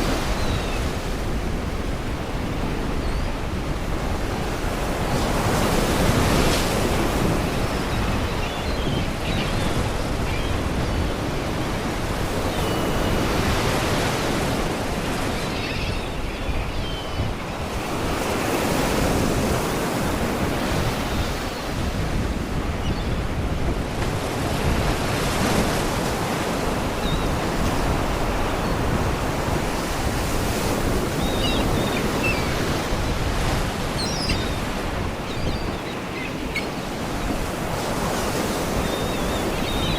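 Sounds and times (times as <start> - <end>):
sea waves breaking on rocks: 28.2 - 39.9.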